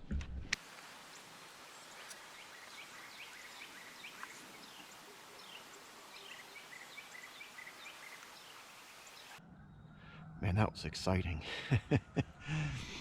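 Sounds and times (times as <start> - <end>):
faint steady hiss: 0.5 - 9.4
small birds chirping: 0.6 - 10.8.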